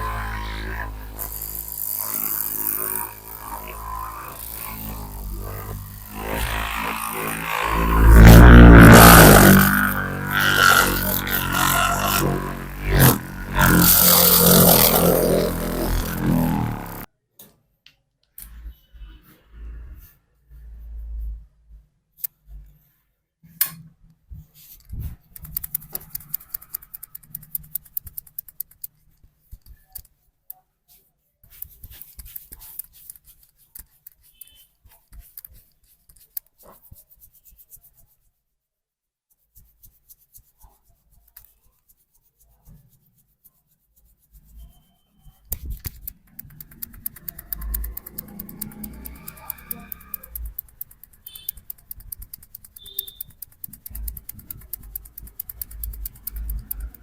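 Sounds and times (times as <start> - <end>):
hands clicking and tapping on head: 25.2 - 30.0, 45.6 - 57.0.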